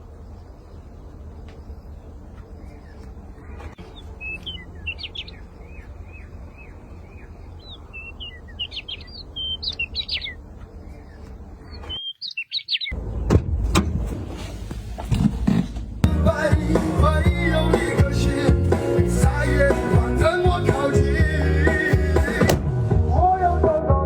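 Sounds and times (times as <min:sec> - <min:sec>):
steady low rumble: 0:00.0 - 0:12.0
small birds chirping: 0:00.0 - 0:13.4.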